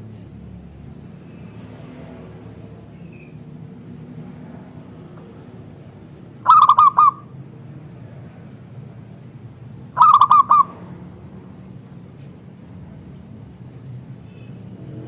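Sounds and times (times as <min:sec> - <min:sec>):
dove cooing: 0:06.4 - 0:07.3, 0:10.0 - 0:10.8.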